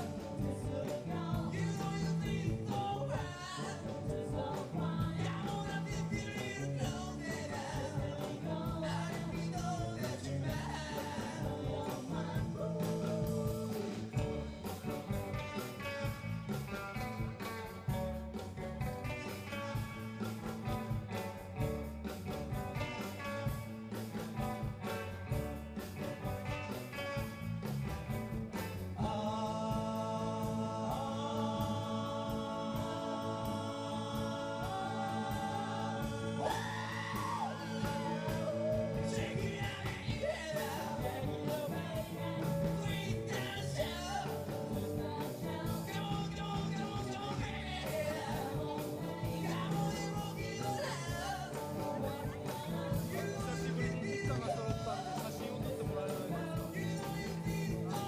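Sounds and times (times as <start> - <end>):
person singing: 0.0 - 14.4, 29.0 - 58.0
live rock band playing: 0.0 - 58.0.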